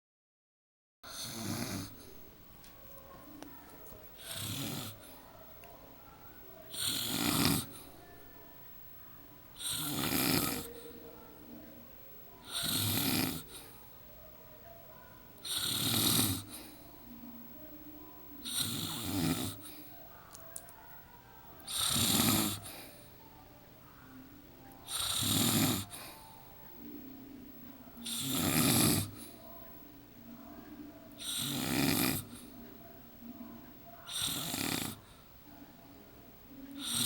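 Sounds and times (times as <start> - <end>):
woman snoring: 1.1 - 2.2, 4.2 - 5.1, 6.7 - 7.9, 9.6 - 10.8, 12.4 - 13.8, 15.4 - 16.7, 18.4 - 19.8, 21.7 - 23.0, 24.9 - 26.2, 28.0 - 29.4, 31.1 - 32.5, 34.1 - 35.2, 36.8 - 37.0.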